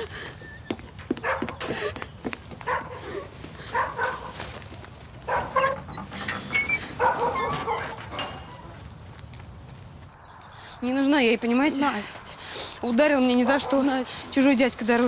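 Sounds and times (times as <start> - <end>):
dog barking: 1.2 - 1.7, 2.6 - 4.5, 5.2 - 5.9, 7.0 - 8.2, 13.5 - 14.0.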